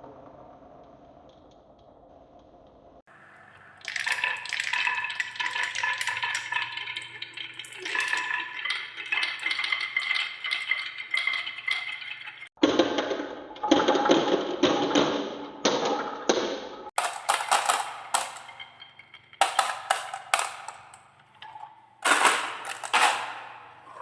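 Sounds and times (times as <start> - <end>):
marbles clattering down a track: 16.9 - 21.2, 22.0 - 23.7.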